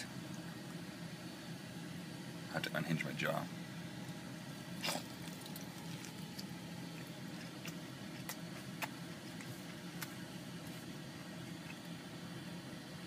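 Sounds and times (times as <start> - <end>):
steady low hum: 0.0 - 13.0
wet chewing clicks: 4.8 - 10.8
person biting burger: 4.8 - 10.9.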